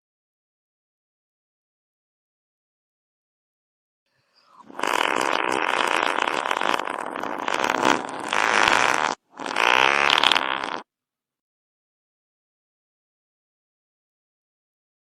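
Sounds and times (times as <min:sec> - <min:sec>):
long fart: 0:04.6 - 0:10.9.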